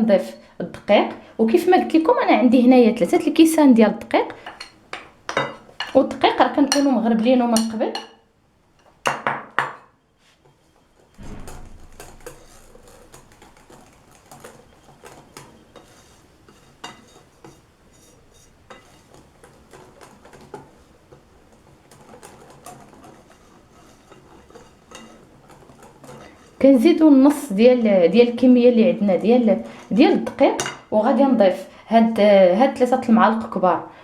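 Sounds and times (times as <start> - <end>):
utensils clinking on mixing bowl: 4.3 - 8.2, 10.8 - 30.9
utensil clatter: 11.2 - 17.6, 18.3 - 30.9.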